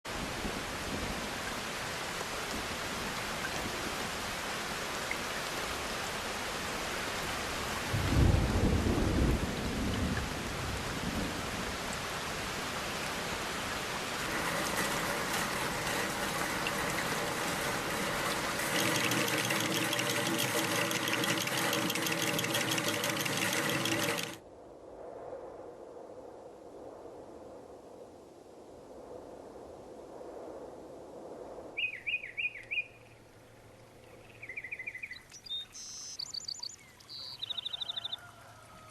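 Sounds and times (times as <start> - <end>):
heavy rain: 0.1 - 24.4
low rumble of thunder: 7.9 - 12.0.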